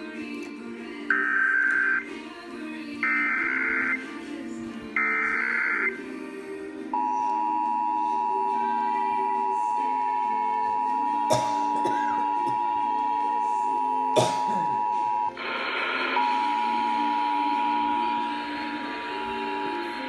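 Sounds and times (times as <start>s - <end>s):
buzzy data noise: 3.0s - 4.0s, 5.0s - 6.0s.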